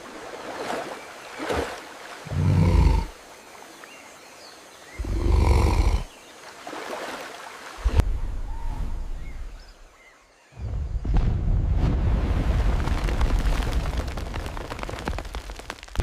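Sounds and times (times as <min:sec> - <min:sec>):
deep monster roars: 0:02.3 - 0:03.1, 0:05.0 - 0:06.1.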